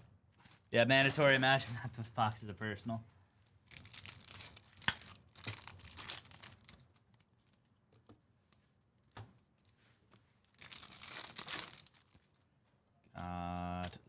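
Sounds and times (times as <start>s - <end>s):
card pack wrappers tearing and crinkling: 3.7s - 7.6s, 10.5s - 12.2s.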